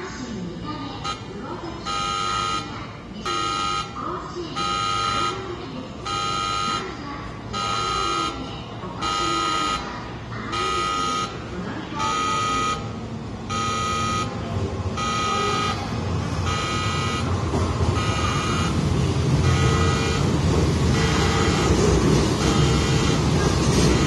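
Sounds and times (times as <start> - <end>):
harsh station departure buzzer: 1.0 - 8.4, 9.0 - 24.0
low train rumble: 6.9 - 24.0.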